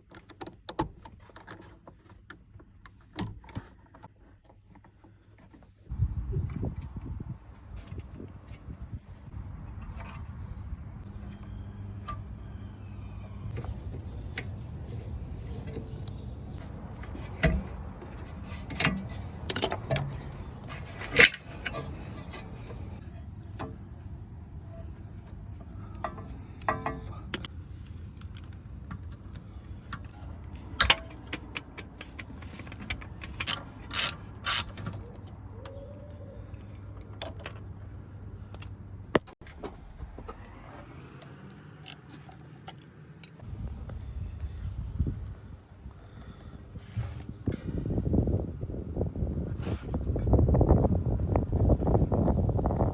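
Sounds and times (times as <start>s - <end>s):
metal tools clanking on car parts: 13.5s - 23.0s, 25.8s - 29.2s, 29.9s - 35.8s.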